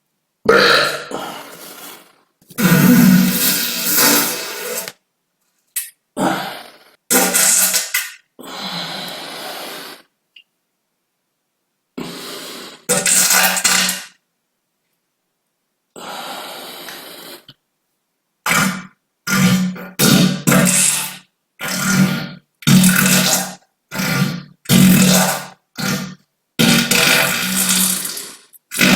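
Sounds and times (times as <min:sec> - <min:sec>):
person farting: 0:00.4 - 0:05.0, 0:05.8 - 0:08.3, 0:12.0 - 0:14.2, 0:18.4 - 0:28.9.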